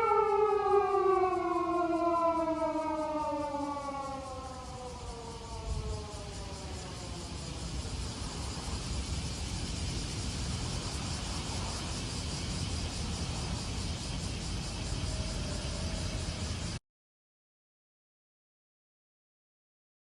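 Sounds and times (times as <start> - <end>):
police siren winding down: 0.0 - 7.4
cicada buzz: 0.0 - 16.8
traffic rumble: 0.0 - 16.8.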